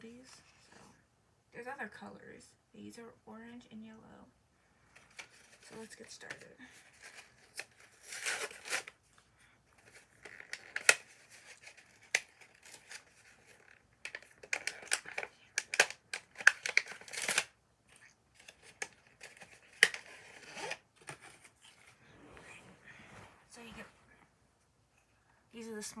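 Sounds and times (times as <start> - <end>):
plastic crinkling and tearing: 5.0 - 9.2, 9.8 - 22.0
sharp plastic clicks: 14.0 - 17.5.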